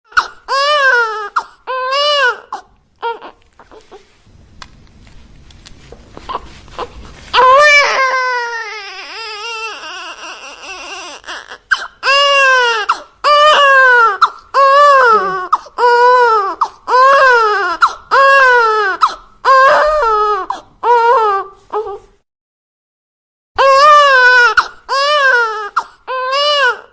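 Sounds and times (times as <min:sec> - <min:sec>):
baby crying: 0:00.1 - 0:04.0, 0:06.3 - 0:22.1, 0:23.6 - 0:26.9.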